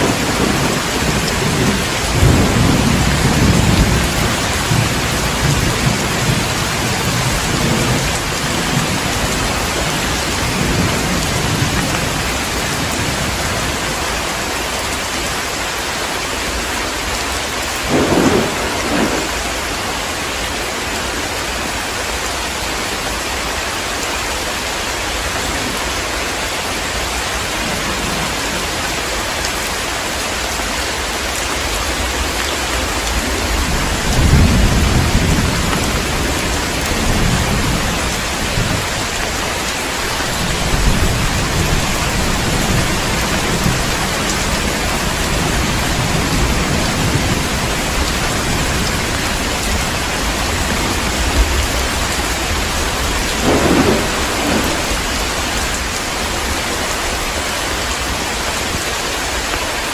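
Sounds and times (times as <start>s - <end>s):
rolling thunder rumble: 0.0s - 13.9s, 17.8s - 20.1s, 32.8s - 58.8s
heavy rain falling: 0.0s - 59.9s.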